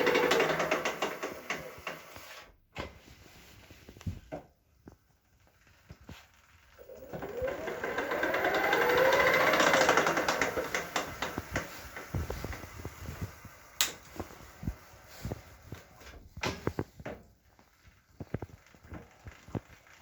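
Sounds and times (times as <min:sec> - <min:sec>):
electric hub motor whining: 0:00.0 - 0:02.0, 0:06.8 - 0:13.9
wheel knocking: 0:00.0 - 0:02.0, 0:06.8 - 0:13.5.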